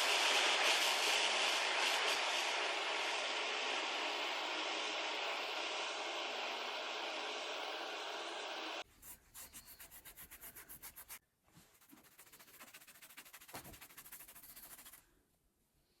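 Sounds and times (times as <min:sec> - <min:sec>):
hand-sanding wood: 0:08.8 - 0:11.2, 0:11.8 - 0:15.0.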